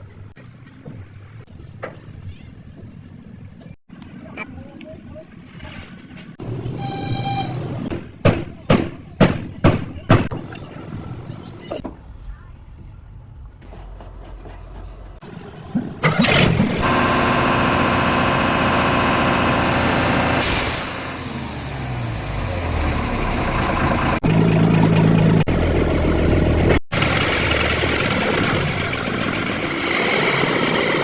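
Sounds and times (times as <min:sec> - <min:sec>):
truck engine starting and running: 0:06.4 - 0:08.0, 0:15.2 - 0:31.0
air hissing: 0:17.3 - 0:22.7.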